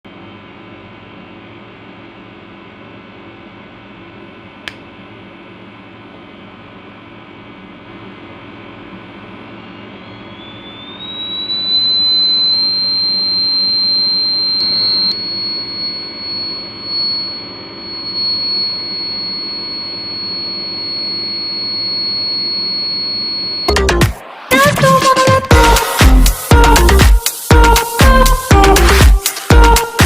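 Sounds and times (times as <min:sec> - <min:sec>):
high-pitched alarm buzzer: 0:10.1 - 0:24.0, 0:25.5 - 0:30.0.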